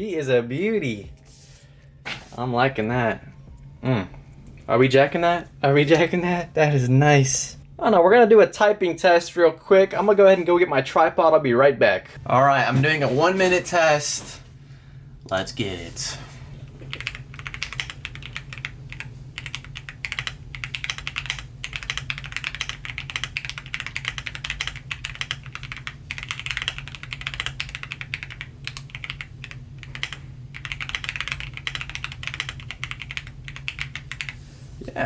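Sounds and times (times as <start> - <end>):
mechanical keyboard typing: 16.9 - 34.4.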